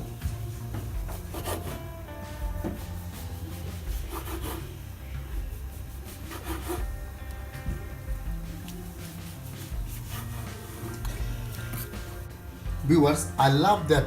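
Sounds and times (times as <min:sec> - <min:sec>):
music: 0:00.0 - 0:14.0
knife sawing through bread: 0:01.1 - 0:01.9, 0:02.8 - 0:04.8, 0:05.6 - 0:06.9, 0:09.2 - 0:11.0.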